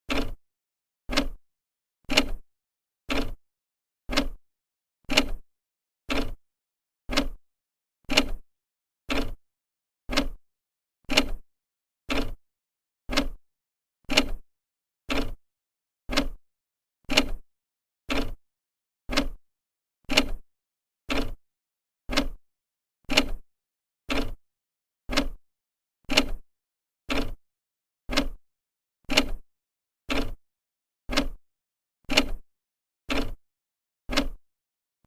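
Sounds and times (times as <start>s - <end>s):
clock ticking: 1.1s - 1.4s, 4.1s - 4.4s, 7.1s - 7.4s, 10.1s - 10.4s, 13.1s - 13.4s, 16.1s - 16.4s, 19.1s - 19.4s, 22.1s - 22.4s, 25.1s - 25.4s, 28.1s - 28.4s, 30.1s - 30.4s, 31.1s - 31.4s, 33.1s - 33.4s, 34.1s - 34.4s.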